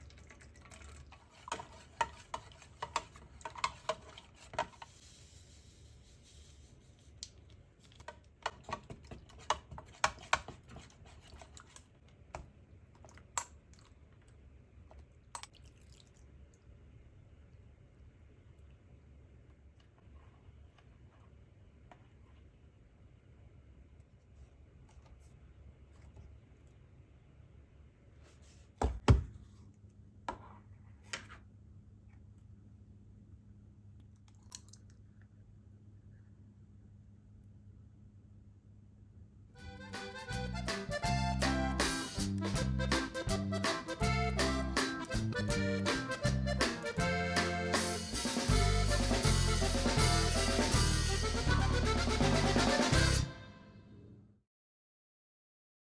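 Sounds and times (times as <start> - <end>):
low steady hum: 0.0 - 54.4
kitchen utensils clicking and tapping: 1.4 - 4.8, 8.0 - 11.7.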